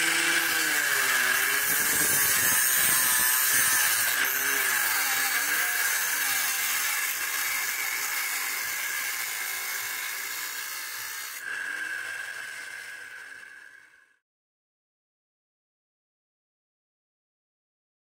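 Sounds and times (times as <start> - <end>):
angle grinder whine: 0.0 - 14.2.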